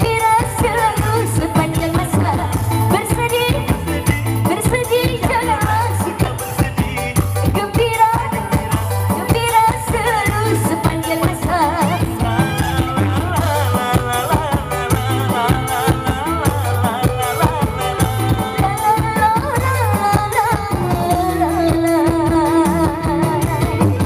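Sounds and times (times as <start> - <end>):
band with drums and percussion: 0.0 - 24.0
person singing ornamented melody: 10.2 - 24.0.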